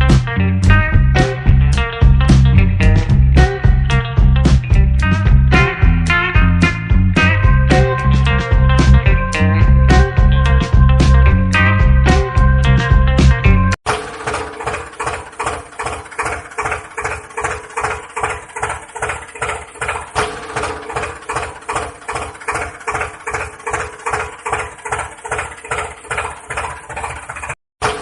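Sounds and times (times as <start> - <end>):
engine idling with chugging pulse: 13.9 - 28.0.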